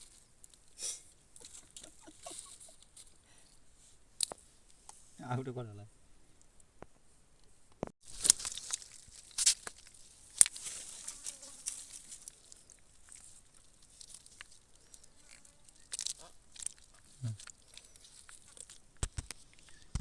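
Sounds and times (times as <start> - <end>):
sharp rustling and crackling: 0.0 - 3.2, 8.0 - 20.0.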